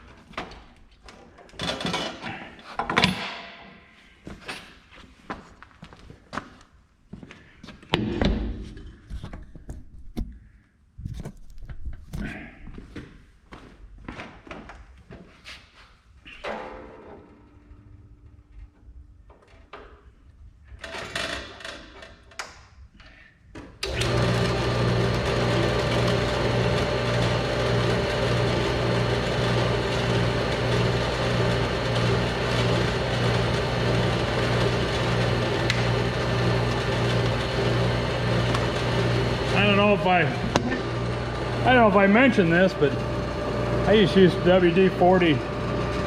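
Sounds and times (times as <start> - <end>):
bandsaw running: 23.8 - 46.0.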